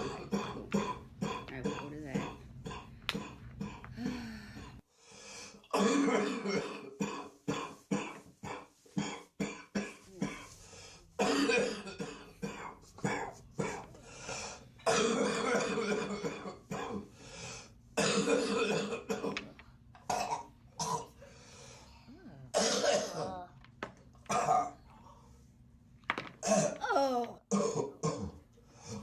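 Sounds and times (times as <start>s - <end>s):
person coughing: 0.0s - 4.4s, 5.7s - 10.5s, 11.2s - 13.9s, 14.8s - 17.1s, 18.0s - 19.4s, 20.1s - 21.2s, 22.5s - 23.5s, 26.4s - 28.4s.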